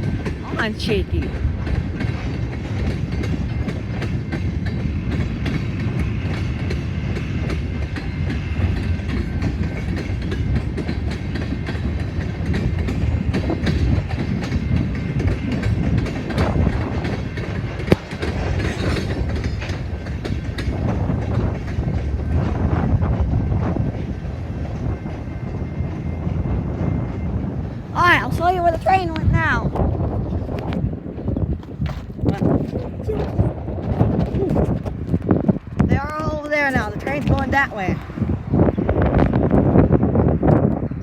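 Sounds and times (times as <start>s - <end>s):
train rumbling: 0.0s - 41.0s
wheels clacking over rail joints: 1.2s - 38.2s.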